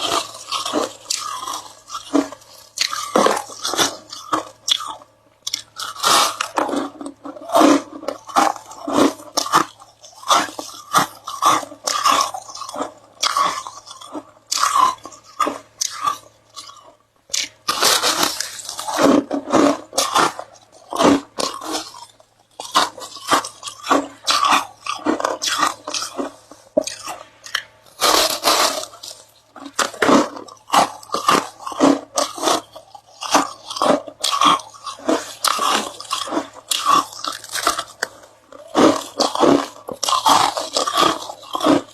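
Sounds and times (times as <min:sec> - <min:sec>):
faint low hum: 0:00.0 - 0:41.9
person chewing ice: 0:00.0 - 0:41.9.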